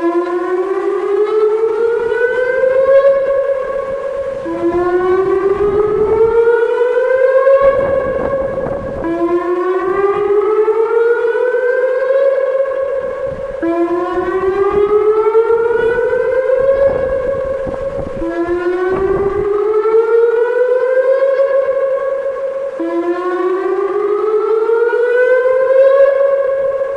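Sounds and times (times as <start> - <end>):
electronic siren whooping: 0.0 - 26.9.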